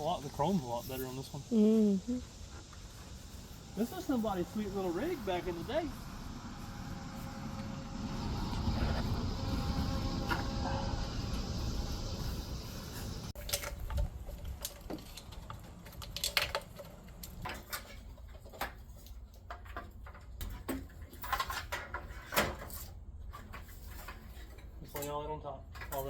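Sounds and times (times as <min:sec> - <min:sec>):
steady low hum: 0:00.0 - 0:13.4
clicks and knocks of parts handled: 0:13.4 - 0:26.0.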